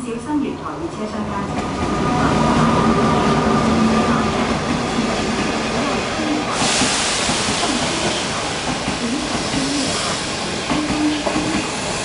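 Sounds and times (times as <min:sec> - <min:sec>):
train compressed air hiss: 0:06.5 - 0:12.0.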